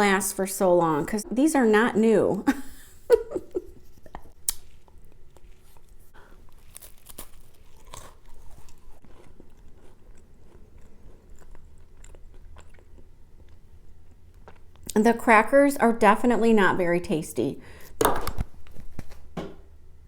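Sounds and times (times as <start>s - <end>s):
crunchy chewing: 3.9s - 14.9s
biting a cracker: 4.1s - 14.9s.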